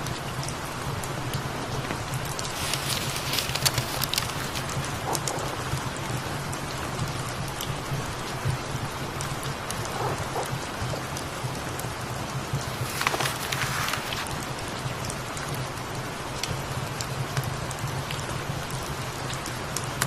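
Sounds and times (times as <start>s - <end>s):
rustle: 0.0s - 6.0s, 6.6s - 20.0s
steady rain falling: 0.0s - 20.0s.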